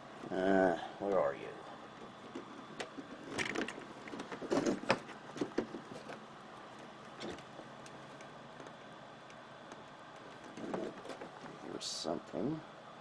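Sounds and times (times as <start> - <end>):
hands handling plastic casing: 2.0 - 6.2.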